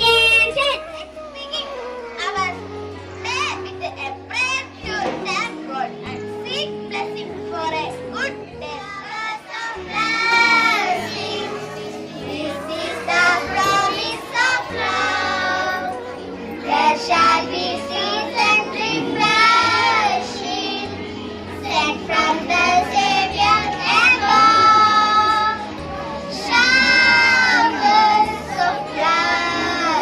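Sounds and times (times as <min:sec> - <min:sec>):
children singing: 0:08.8 - 0:30.0.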